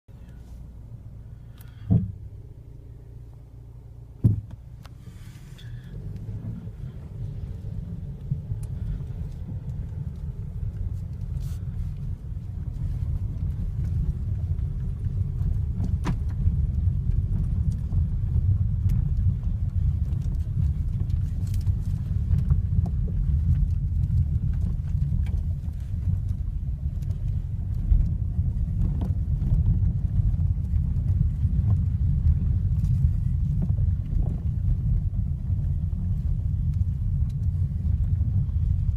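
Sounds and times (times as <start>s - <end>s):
car road rumble on gravel: 0.1s - 38.9s
steering sharp knocks: 1.6s - 2.3s, 4.2s - 4.7s.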